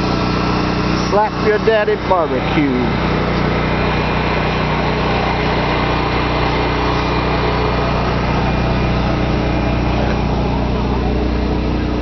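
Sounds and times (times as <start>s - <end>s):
small engine running: 0.0s - 12.0s.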